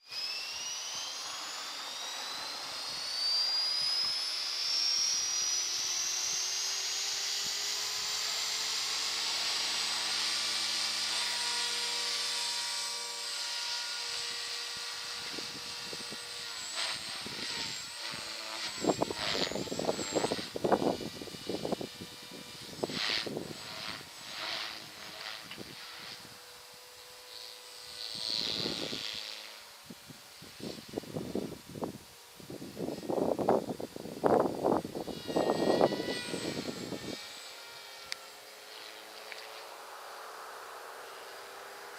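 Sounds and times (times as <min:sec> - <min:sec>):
electric helicopter motor whine: 0:00.0 - 0:41.9
wind buffeting microphone: 0:17.2 - 0:24.0, 0:29.9 - 0:37.2.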